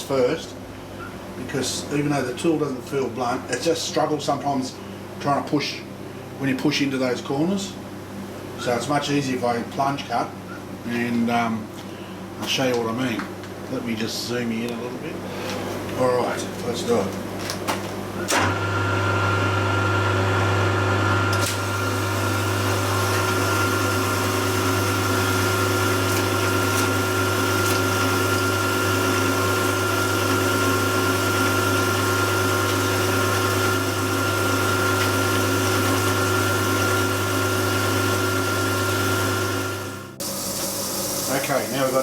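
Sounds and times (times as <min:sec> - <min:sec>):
milling machine cutting metal: 0:18.3 - 0:42.0
coolant hiss: 0:21.3 - 0:42.0.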